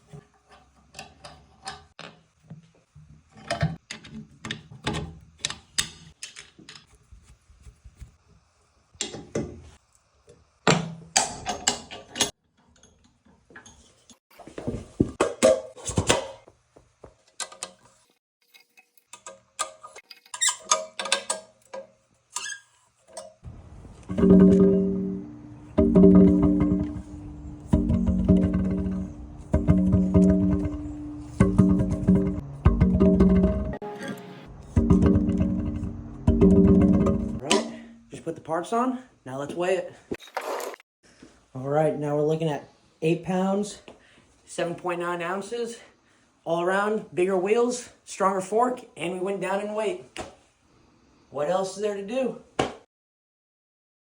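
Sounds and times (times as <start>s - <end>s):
hand tools clicking and knocking: 18.5s - 23.4s, 24.0s - 33.8s
guitar music: 23.8s - 37.9s.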